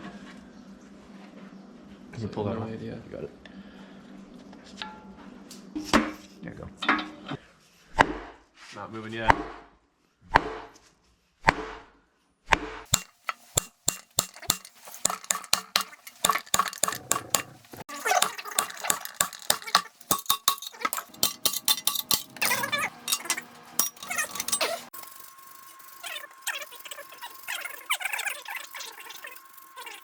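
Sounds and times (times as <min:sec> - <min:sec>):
metal tools clinking: 0:12.9 - 0:30.0.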